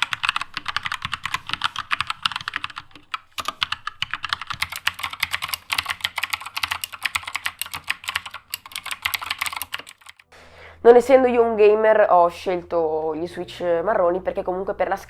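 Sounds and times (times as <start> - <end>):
typing on mechanical keyboard: 0.0 - 10.3.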